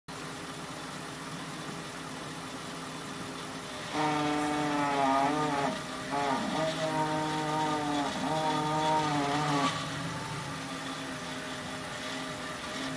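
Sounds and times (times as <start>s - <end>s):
car engine idling: 0.1s - 12.9s
loud pitched squeal: 3.8s - 12.5s.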